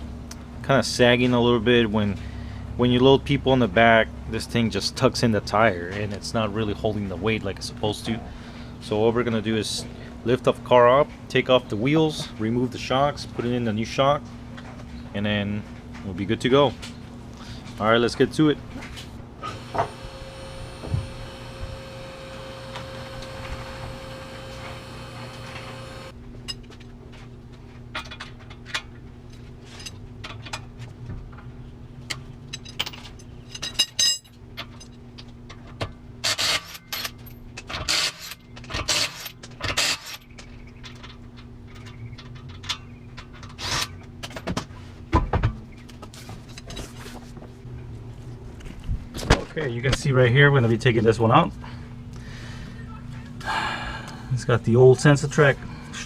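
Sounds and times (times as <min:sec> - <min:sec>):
steady whine: 0:08.8 - 0:26.2
metal tools and parts clanking: 0:32.5 - 0:35.6, 0:36.2 - 0:44.6.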